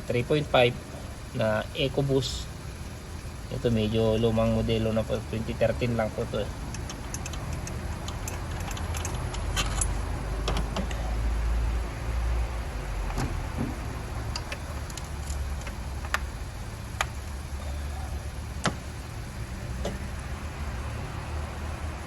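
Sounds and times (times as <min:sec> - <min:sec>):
steady low rumble: 0:00.0 - 0:22.0
hand tools clinking on metal: 0:05.8 - 0:11.1.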